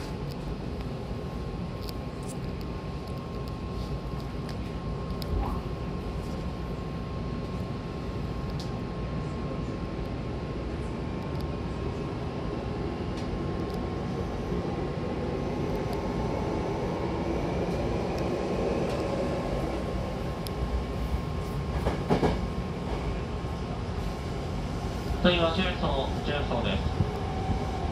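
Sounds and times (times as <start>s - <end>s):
train wheels and motors rumbling: 0.0s - 27.9s.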